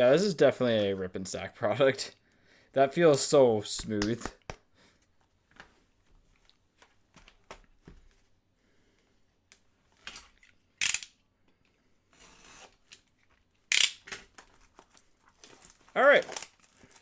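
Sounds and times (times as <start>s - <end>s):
cards and wrappers rustling: 12.2s - 17.0s
packs tearing open: 13.7s - 17.0s.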